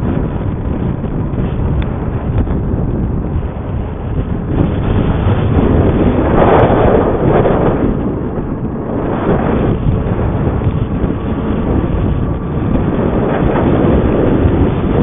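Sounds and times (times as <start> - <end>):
low rumble: 0.0 - 15.0
wind buffeting microphone: 0.0 - 15.0.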